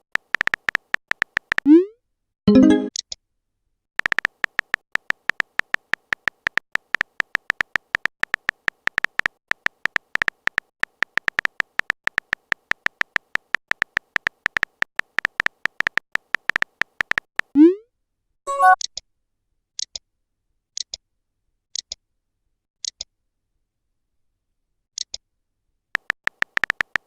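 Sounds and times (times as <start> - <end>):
short high electronic beeps: 18.5 - 18.8.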